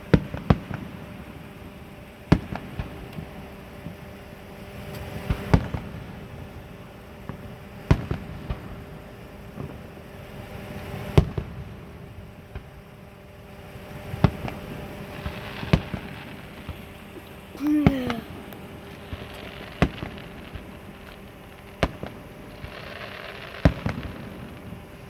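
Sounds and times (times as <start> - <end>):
fireworks banging: 14.0 - 25.0.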